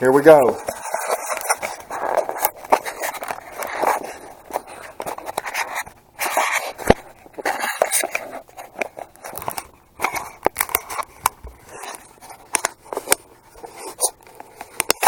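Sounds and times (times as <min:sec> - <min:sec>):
camera case scraping and rubbing: 0:00.3 - 0:15.0.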